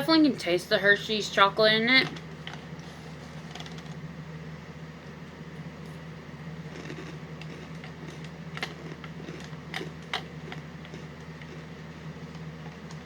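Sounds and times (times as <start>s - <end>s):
steady low hum: 0.0s - 13.0s
cereal crunching: 6.6s - 13.0s.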